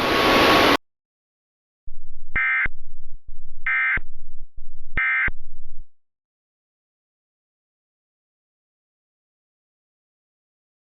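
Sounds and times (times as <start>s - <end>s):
loud low pulsing buzz: 1.9s - 6.0s.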